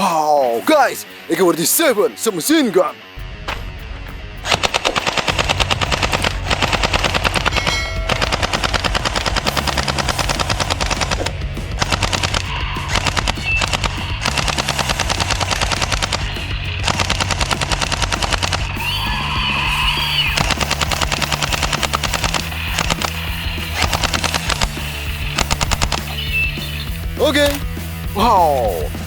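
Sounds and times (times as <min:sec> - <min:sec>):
toy gun electronic machine-gun bursts: 0:04.5 - 0:26.7.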